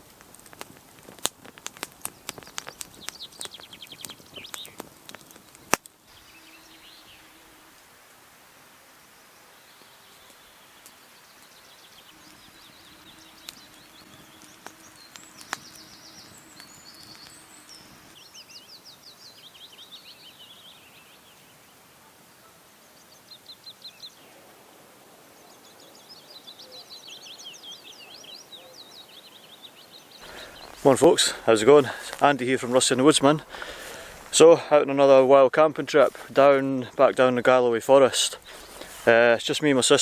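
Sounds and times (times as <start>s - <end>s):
faint steady hiss: 0.0s - 40.0s
songbirds trilling: 1.5s - 7.9s, 8.9s - 40.0s.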